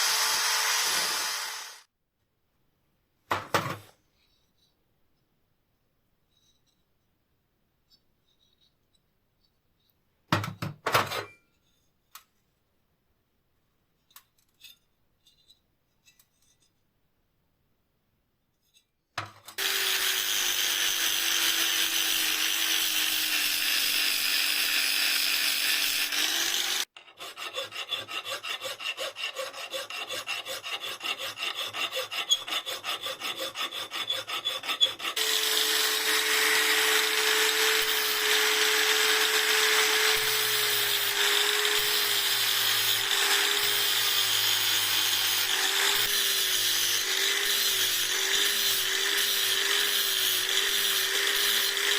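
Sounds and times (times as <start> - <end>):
power tool grinding steel: 0.0 - 1.9, 19.6 - 51.9.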